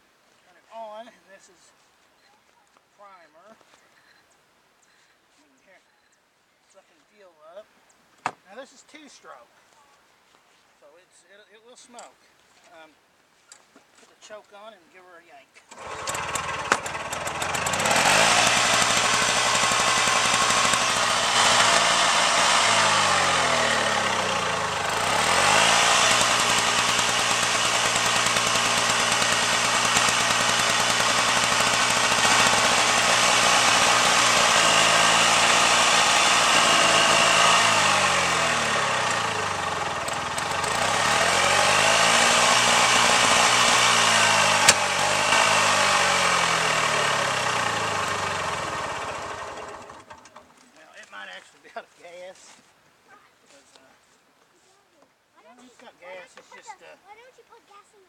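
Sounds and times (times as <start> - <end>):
two-stroke engine running: 15.7 - 50.4.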